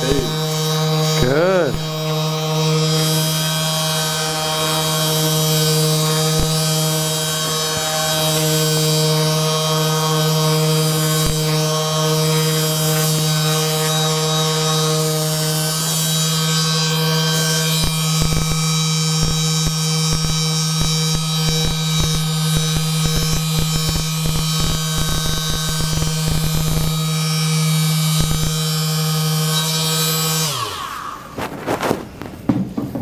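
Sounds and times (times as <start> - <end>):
small electric motor humming: 0.0 - 32.3
knocks and handling noises: 31.4 - 33.0.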